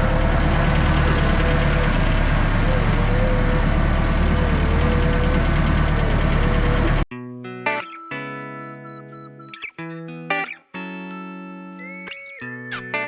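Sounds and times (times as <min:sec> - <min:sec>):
engine running with low hum: 0:00.0 - 0:07.1
thin wavering tone: 0:07.8 - 0:13.0.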